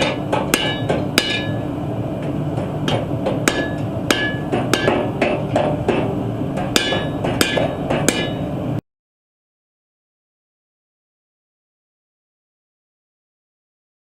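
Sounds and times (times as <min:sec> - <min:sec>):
hammer striking steel on anvil: 0:00.0 - 0:01.7, 0:02.6 - 0:08.6.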